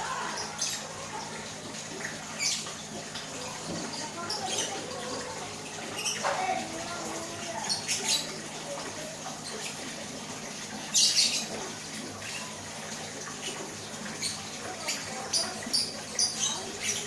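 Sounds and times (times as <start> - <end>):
lovebirds chirping: 13.4 - 17.0.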